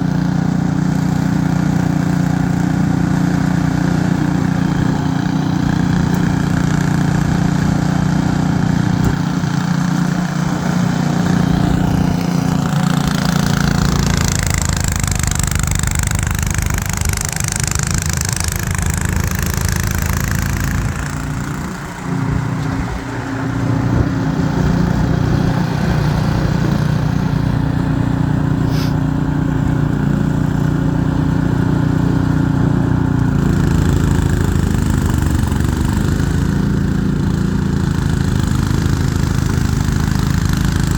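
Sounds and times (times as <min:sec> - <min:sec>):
snowblower engine running: 0:00.0 - 0:40.9
hiss of thrown snow: 0:28.6 - 0:29.0.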